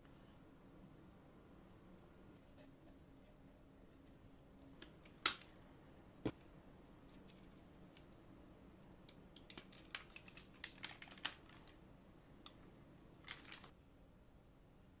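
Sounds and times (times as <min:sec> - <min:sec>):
hands handling plastic packaging: 0:09.0 - 0:11.8, 0:13.2 - 0:13.7.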